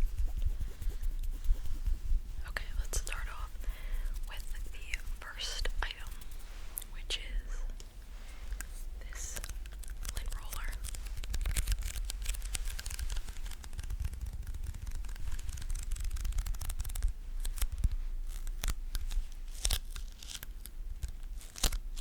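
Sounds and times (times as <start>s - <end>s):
sticky surface crackling: 8.3s - 22.0s.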